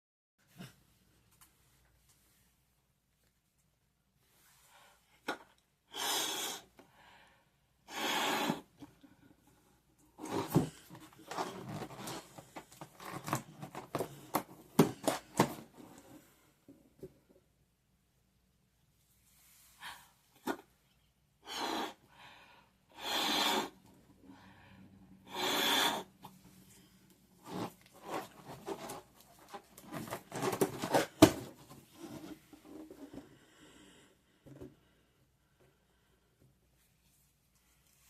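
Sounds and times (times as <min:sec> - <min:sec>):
breath puffs blowing up balloon: 0:05.9 - 0:06.8, 0:07.9 - 0:08.8, 0:21.4 - 0:22.1, 0:22.9 - 0:23.9, 0:25.2 - 0:26.4
rubber balloon rubs and clicks: 0:10.2 - 0:16.1, 0:27.4 - 0:33.2.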